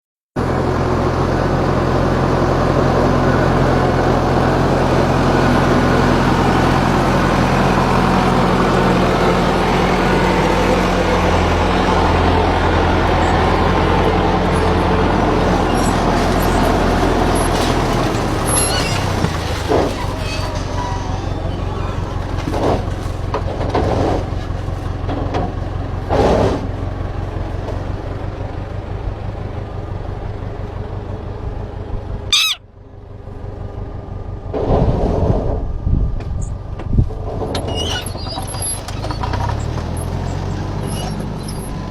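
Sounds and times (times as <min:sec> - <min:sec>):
vehicle engine running: 0:00.4 - 0:20.2.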